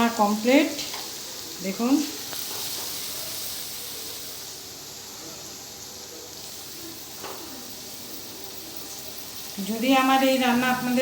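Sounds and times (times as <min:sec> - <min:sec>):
food sizzling in oil: 0:00.0 - 0:11.0.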